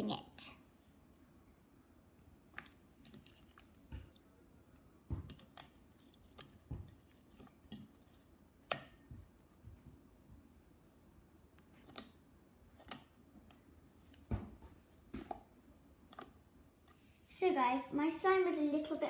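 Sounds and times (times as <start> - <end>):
slime squelching: 2.3 - 10.4, 11.4 - 17.1.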